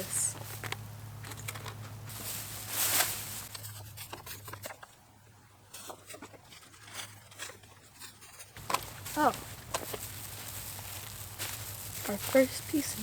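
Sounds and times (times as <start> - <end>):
rustling of objects: 0.0 - 5.0, 5.8 - 13.0
light clicks and crinkles: 0.1 - 5.0, 5.8 - 13.0.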